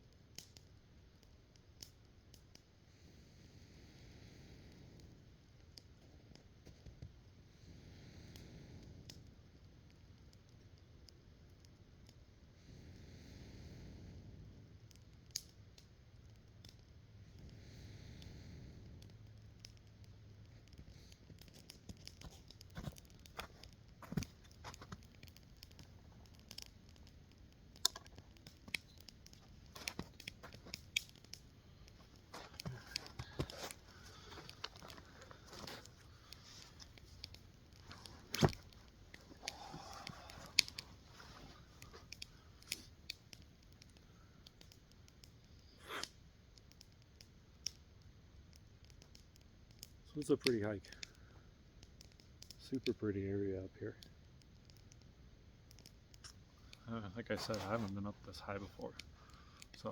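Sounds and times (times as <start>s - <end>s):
campfire crackling: 0.0s - 59.9s
fire snaps and pops: 0.0s - 59.9s
soft rustling of handling: 19.7s - 45.7s, 55.7s - 59.9s.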